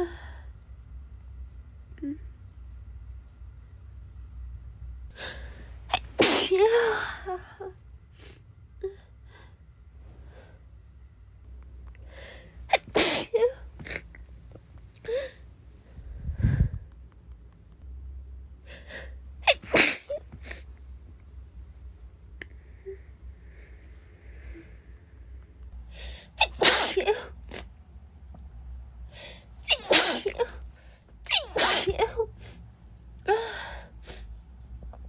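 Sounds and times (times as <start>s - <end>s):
breaths: 0.0s - 0.6s, 5.1s - 5.9s, 8.2s - 10.7s, 12.0s - 12.6s, 15.0s - 16.9s, 22.4s - 26.4s, 29.1s - 29.6s, 30.7s - 31.2s, 33.3s - 34.3s
woman sneezing: 5.9s - 7.1s, 12.7s - 14.1s, 19.5s - 20.6s, 26.4s - 27.7s, 29.6s - 30.6s, 31.3s - 32.6s.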